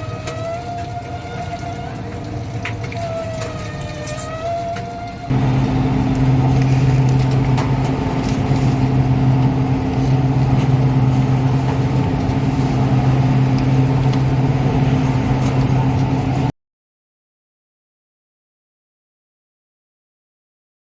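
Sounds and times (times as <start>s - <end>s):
machine humming: 5.3s - 16.5s.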